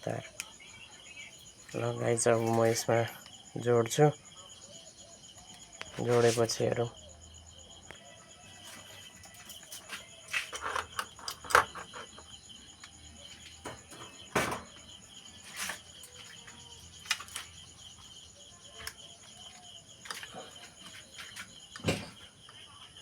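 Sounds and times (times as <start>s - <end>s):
wires and parts clicking: 17.0s - 17.6s.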